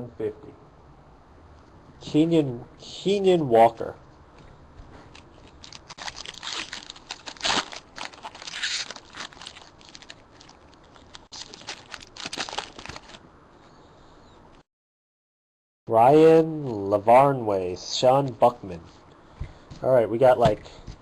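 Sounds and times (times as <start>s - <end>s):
cards rustling: 5.0s - 13.2s
foil wrappers crinkling and tearing: 5.1s - 13.2s.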